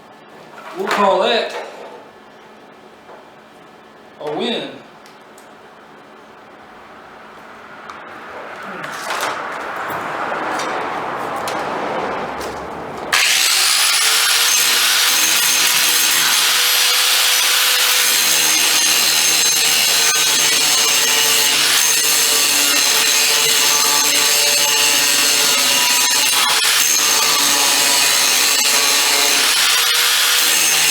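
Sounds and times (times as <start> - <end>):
angle grinder grinding metal: 13.1 - 30.9.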